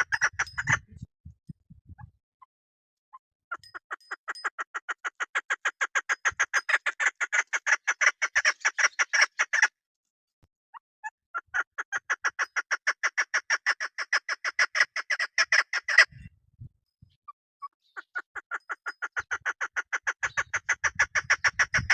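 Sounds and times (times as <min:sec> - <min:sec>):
partridge calling: 0:00.0 - 0:01.0, 0:03.5 - 0:09.7, 0:11.3 - 0:16.3, 0:17.0 - 0:21.9.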